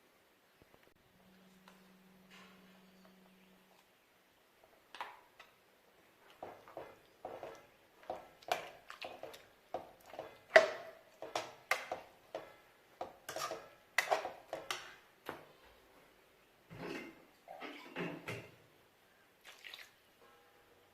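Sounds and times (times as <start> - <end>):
metal utensils clinking against pot: 13.3 - 14.9.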